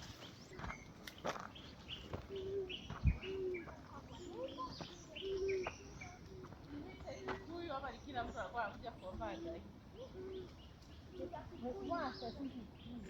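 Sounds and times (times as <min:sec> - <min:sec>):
small birds chirping: 0:00.0 - 0:13.0
dove cooing: 0:01.9 - 0:07.2, 0:09.9 - 0:13.0.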